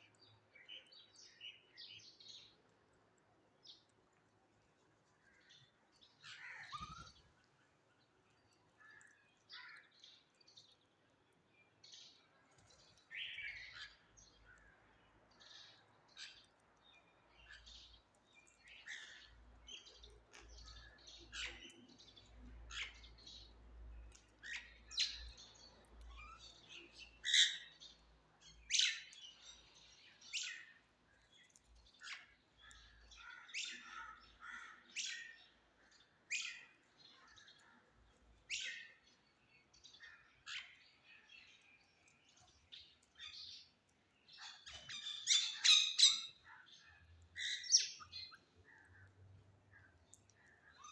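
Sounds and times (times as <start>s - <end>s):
birds calling sharply: 6.2s - 7.5s, 17.3s - 37.7s, 38.4s - 49.1s.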